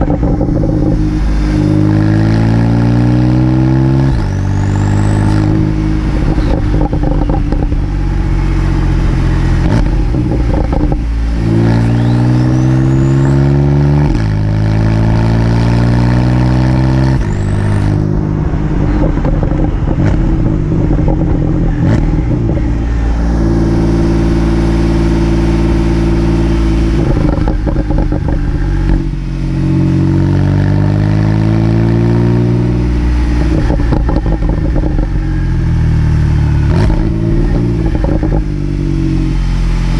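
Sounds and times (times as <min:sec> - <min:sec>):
exhaust pops and crackles: 0:00.0 - 0:01.0, 0:04.1 - 0:08.1, 0:09.5 - 0:13.1, 0:18.8 - 0:22.9, 0:26.0 - 0:29.2, 0:33.3 - 0:35.4, 0:36.7 - 0:38.8
car engine revving: 0:00.0 - 0:39.9
turbo whistle: 0:11.7 - 0:13.5.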